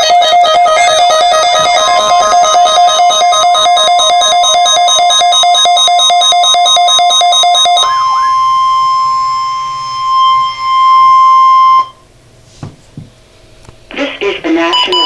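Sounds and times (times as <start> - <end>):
steady warning alarm tone: 0.0 - 12.2
rapidly pulsing electronic beep: 0.7 - 12.0.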